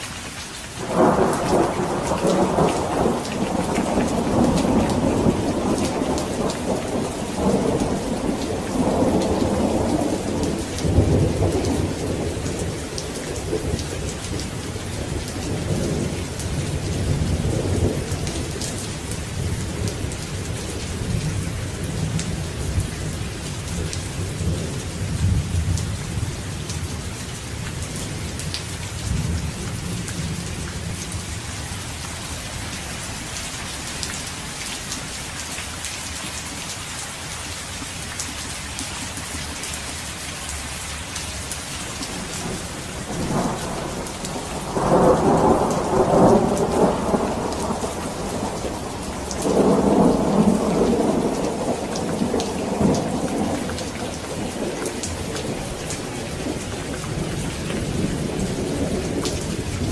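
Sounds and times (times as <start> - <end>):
heavy rain: 0.0 - 59.9
thunder rumbling: 0.8 - 27.0, 41.2 - 59.9.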